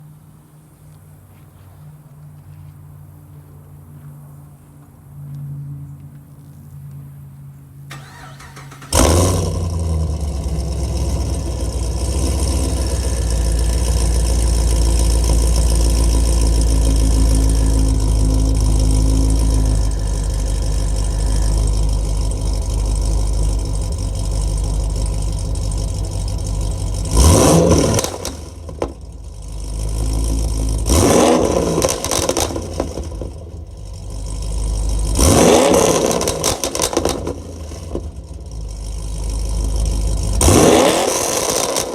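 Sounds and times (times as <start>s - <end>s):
car engine idling and revving: 0.0s - 41.9s
exhaust pops and crackles: 8.9s - 41.9s.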